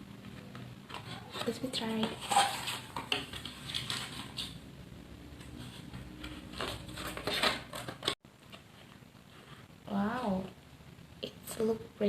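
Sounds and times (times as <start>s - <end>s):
food containers and utensils clattering: 0.9s - 4.6s, 5.7s - 8.2s.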